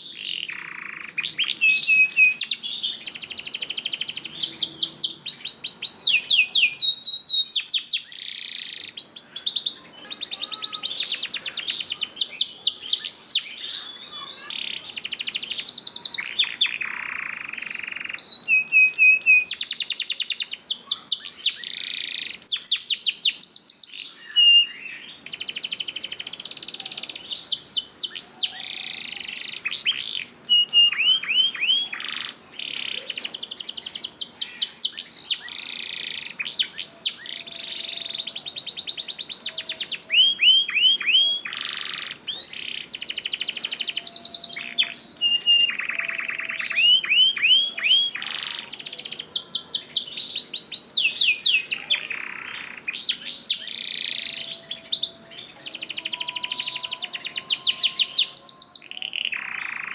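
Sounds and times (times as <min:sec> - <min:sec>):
canary singing trills: 0:00.0 - 0:59.9.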